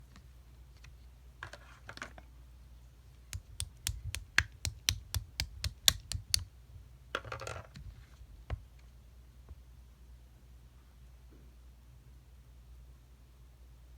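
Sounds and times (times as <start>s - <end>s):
slime clicking pops: 3.4s - 6.4s
slime squishing by hand: 3.4s - 6.4s.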